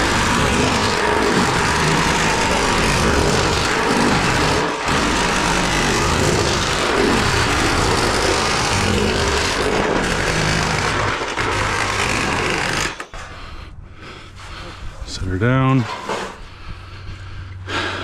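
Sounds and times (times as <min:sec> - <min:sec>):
power tool running: 0:00.0 - 0:13.3.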